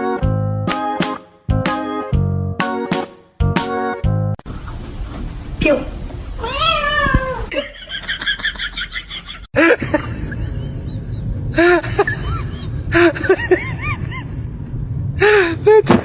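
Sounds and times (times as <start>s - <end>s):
cats meowing: 6.4s - 7.5s.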